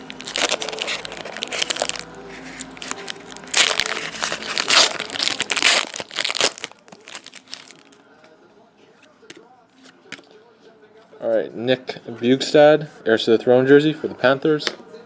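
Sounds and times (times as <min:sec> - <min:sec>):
foil wrapper crinkling: 0:00.0 - 0:08.0.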